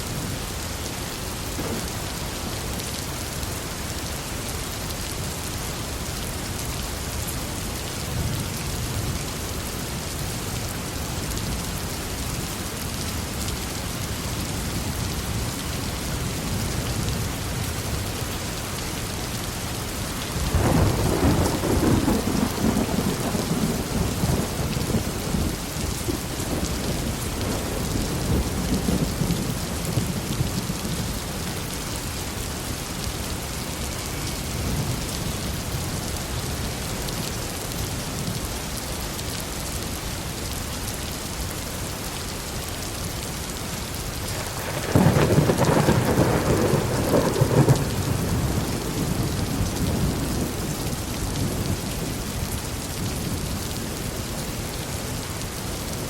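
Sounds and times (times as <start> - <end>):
heavy rain: 0.0 - 56.0
rolling thunder: 20.4 - 31.1, 44.4 - 52.0
loud thunderclap: 44.6 - 49.3.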